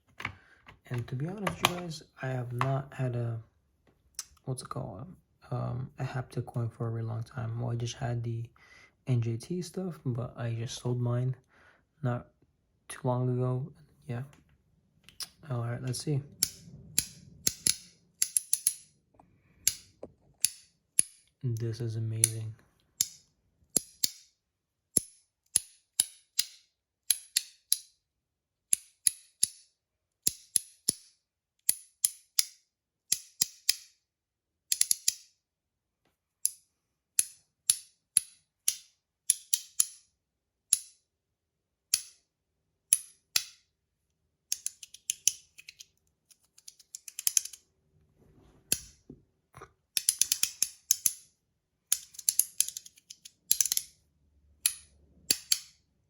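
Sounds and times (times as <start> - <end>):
magnetic coin halves clicking: 46.6 - 47.6, 50.0 - 51.2, 51.9 - 53.9.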